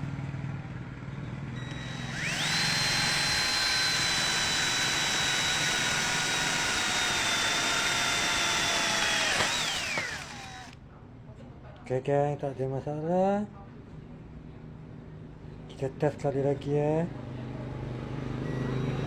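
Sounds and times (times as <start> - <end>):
cordless drill drilling through steel: 1.6 - 10.8.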